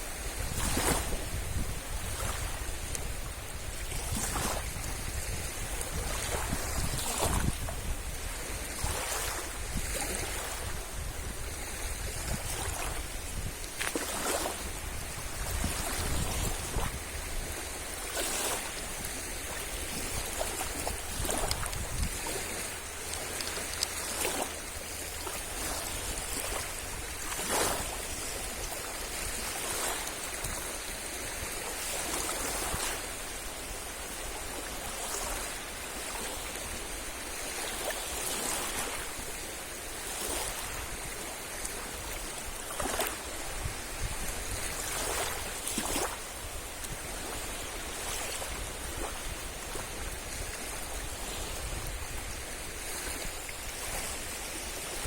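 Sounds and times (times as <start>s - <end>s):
wave breaking with splash: 0.4s - 1.4s, 25.2s - 30.2s.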